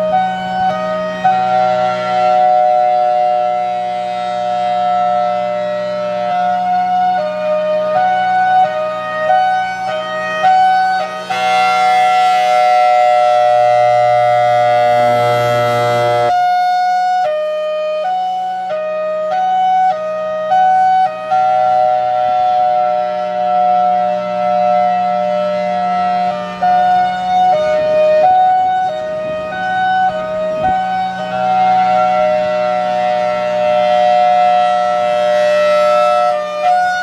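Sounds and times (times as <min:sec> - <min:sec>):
siren alternating two tones: 0:00.0 - 0:17.4, 0:19.3 - 0:37.0
low drone: 0:12.6 - 0:16.4.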